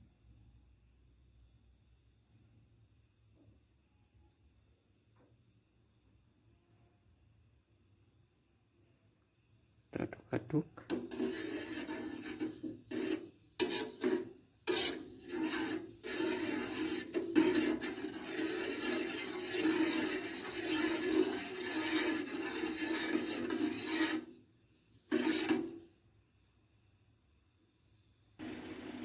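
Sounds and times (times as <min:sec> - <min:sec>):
spoon scraping pot: 0:10.0 - 0:25.9.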